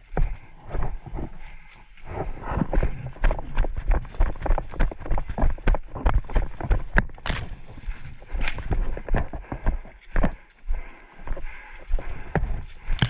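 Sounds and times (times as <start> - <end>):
running footsteps: 0.0 - 13.0.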